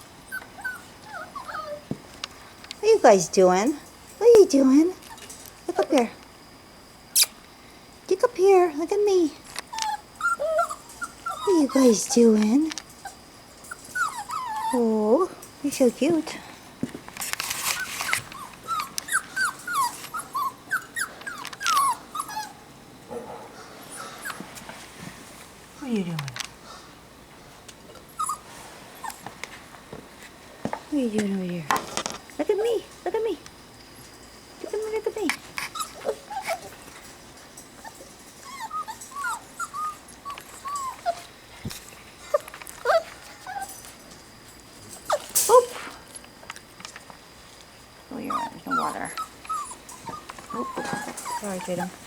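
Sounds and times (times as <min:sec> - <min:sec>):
puppies whimpering: 0:00.3 - 0:01.9, 0:09.7 - 0:15.2, 0:17.5 - 0:22.6, 0:23.9 - 0:24.6, 0:28.1 - 0:29.3, 0:34.6 - 0:36.9, 0:37.8 - 0:41.4, 0:42.2 - 0:43.9, 0:45.0 - 0:45.7, 0:48.1 - 0:52.0.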